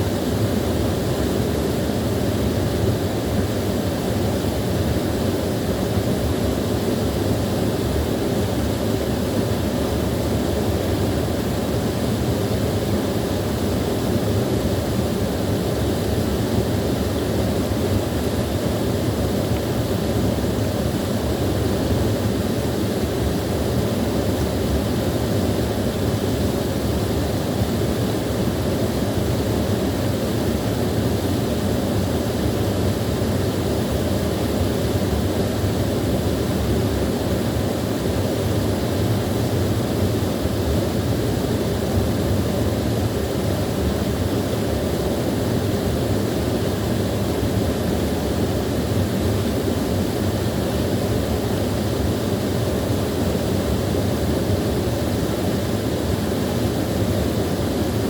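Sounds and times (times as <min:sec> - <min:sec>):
small waterfall rushing: 0:00.0 - 0:58.0.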